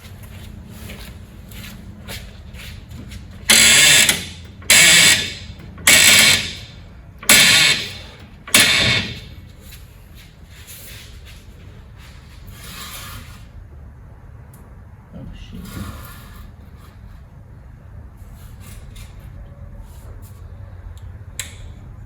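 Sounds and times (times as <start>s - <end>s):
impact wrench bursts: 3.4s - 9.5s.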